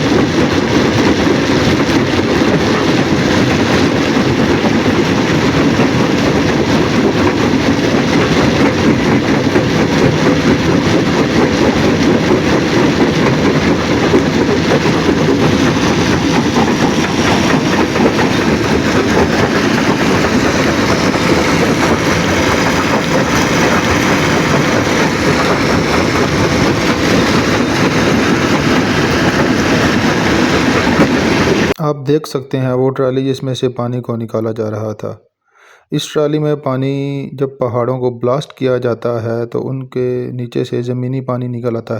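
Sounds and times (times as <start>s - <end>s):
rock rattling: 0.0s - 31.8s
stone crushing machinery rumble: 0.0s - 31.8s.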